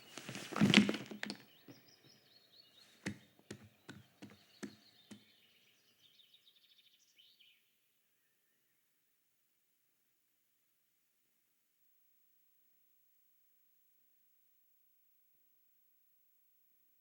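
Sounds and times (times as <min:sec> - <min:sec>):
faint birds chirping: 0:00.0 - 0:09.9
soft knocks: 0:03.0 - 0:05.3.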